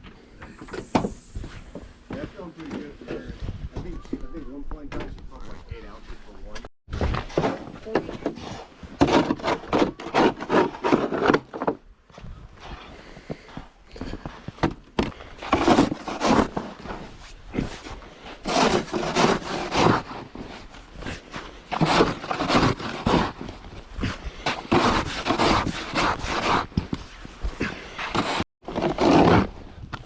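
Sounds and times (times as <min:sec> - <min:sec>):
snow shovel scraping snow: 0:00.5 - 0:03.2, 0:15.4 - 0:29.6.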